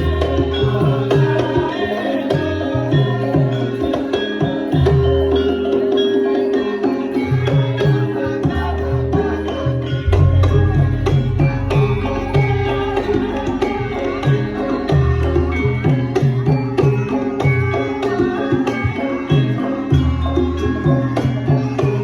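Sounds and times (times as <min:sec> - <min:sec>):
ringing metallophone tones: 0:00.0 - 0:22.0
hand drum strokes: 0:07.6 - 0:22.0
deep gong tone: 0:10.0 - 0:15.8.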